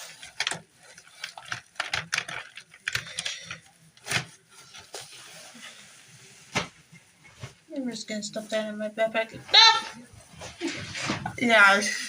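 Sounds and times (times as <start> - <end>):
paper rustling: 0.0 - 7.6.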